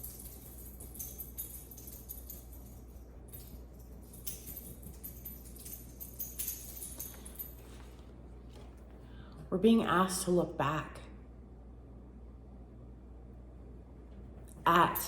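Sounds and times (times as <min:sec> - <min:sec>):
high metallic jingling: 0:00.0 - 0:08.7, 0:14.4 - 0:15.0
low steady hum: 0:00.0 - 0:15.0.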